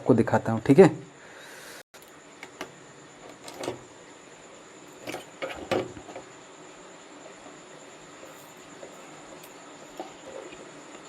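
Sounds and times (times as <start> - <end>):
hand tools clicking and scraping: 4.9 - 6.2.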